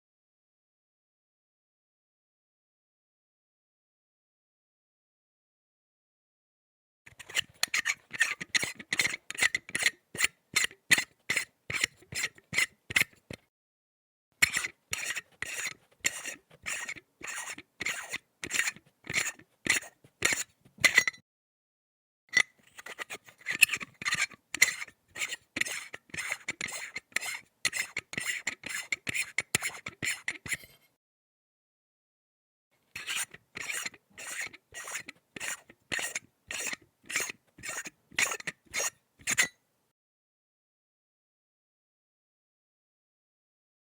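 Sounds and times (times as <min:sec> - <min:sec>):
metal pipe threads rasping: 0:07.1 - 0:13.4, 0:14.4 - 0:21.2, 0:22.3 - 0:30.9, 0:33.0 - 0:39.5.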